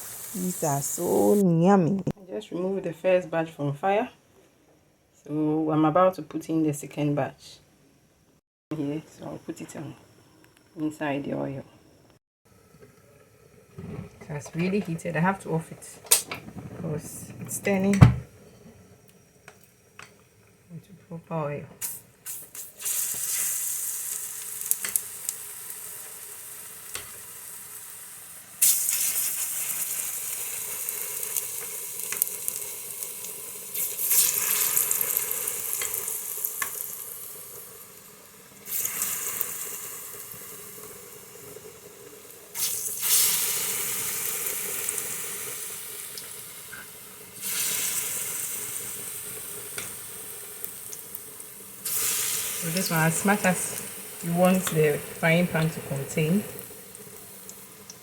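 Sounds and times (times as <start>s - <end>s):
batter sizzling in hot oil: 0.0s - 1.4s, 21.8s - 58.0s.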